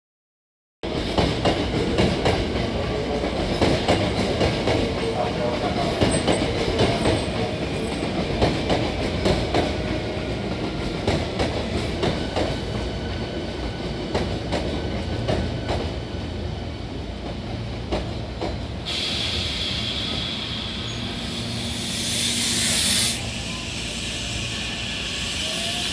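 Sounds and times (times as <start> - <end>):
electric train rumbling: 0.8 - 25.9
hiss: 18.9 - 25.9.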